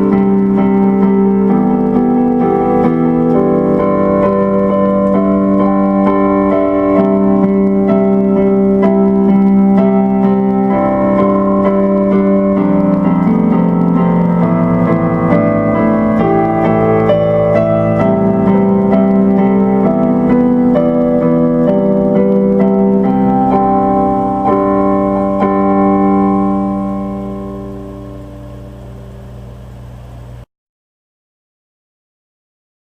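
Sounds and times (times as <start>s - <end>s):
electric piano music: 0.0s - 29.8s.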